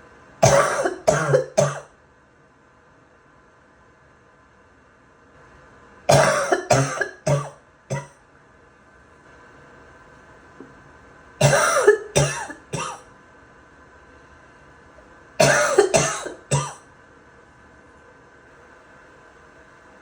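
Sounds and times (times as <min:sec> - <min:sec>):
person wet barking cough: 0:00.4 - 0:01.9, 0:06.1 - 0:08.1, 0:11.4 - 0:13.0, 0:15.4 - 0:16.8.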